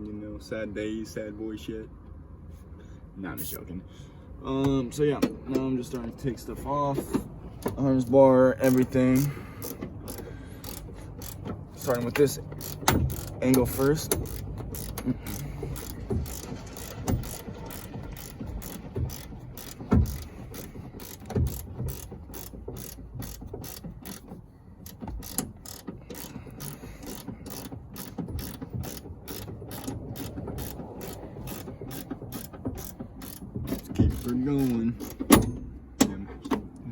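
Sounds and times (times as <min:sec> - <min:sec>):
ratchet wrench clicking: 0:07.6 - 0:35.5.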